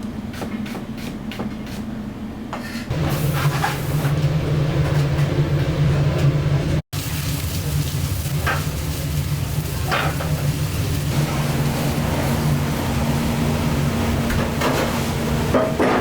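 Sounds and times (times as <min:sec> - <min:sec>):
machinery hum: 0:01.9 - 0:06.8, 0:08.8 - 0:16.0
sizzling crackle: 0:07.0 - 0:15.5.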